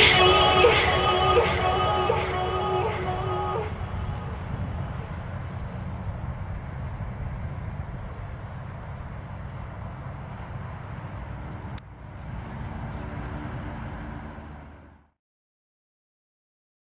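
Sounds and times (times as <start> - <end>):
car exhaust low rumble: 0.0 - 11.8.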